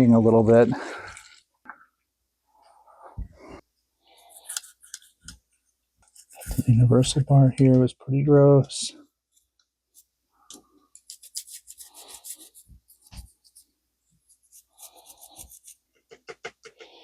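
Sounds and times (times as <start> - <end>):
brush scrubbing metal: 11.1 - 13.7, 14.3 - 15.8.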